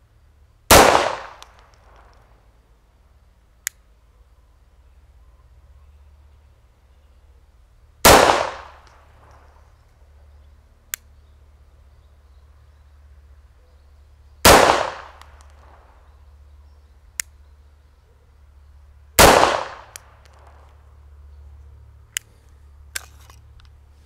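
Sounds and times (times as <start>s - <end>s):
pistol shots with ringing tail: 0.7s - 2.1s, 8.0s - 8.9s, 14.4s - 15.8s, 19.2s - 20.6s.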